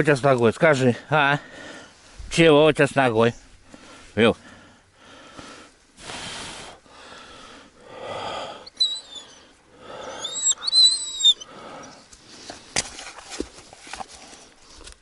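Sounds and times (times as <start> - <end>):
dog wheezy breathing: 7.3 - 12.6
dog whimpering: 8.7 - 12.0.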